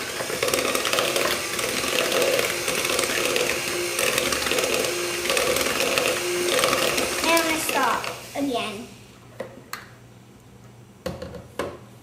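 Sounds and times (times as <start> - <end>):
electric mixer beating batter: 0.0 - 8.9.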